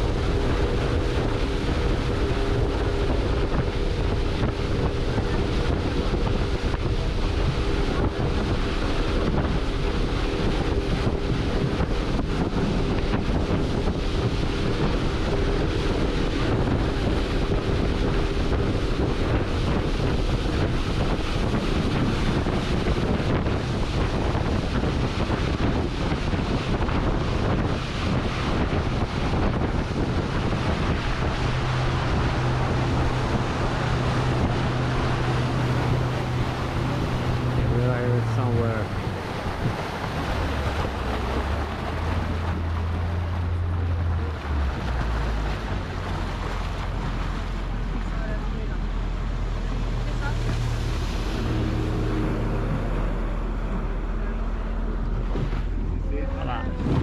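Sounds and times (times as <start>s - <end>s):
boat engine hum: 0.0s - 57.0s
water splashing: 0.0s - 57.0s
wind buffeting microphone: 0.0s - 57.0s.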